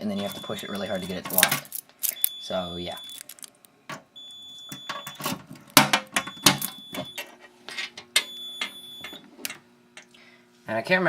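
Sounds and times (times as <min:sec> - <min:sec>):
fire alarm panel beeping: 0:00.0 - 0:01.4, 0:02.1 - 0:03.4, 0:04.2 - 0:07.3, 0:08.2 - 0:09.2.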